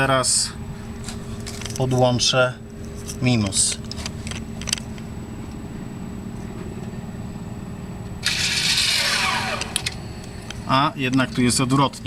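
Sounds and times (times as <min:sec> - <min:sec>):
brake motor humming and whirring: 0:07.8 - 0:12.0.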